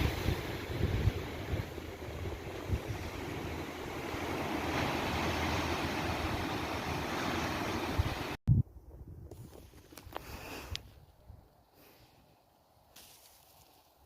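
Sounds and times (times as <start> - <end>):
ocean surf washing on shore: 0.0 - 8.4
wind buffeting microphone: 0.0 - 10.2.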